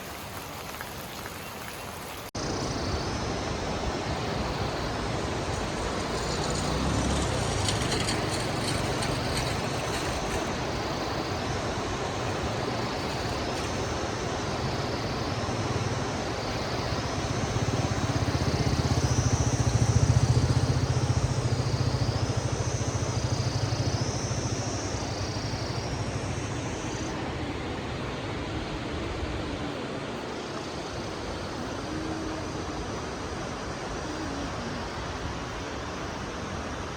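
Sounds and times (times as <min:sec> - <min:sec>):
rain falling: 0:00.0 - 0:02.4, 0:03.8 - 0:14.0.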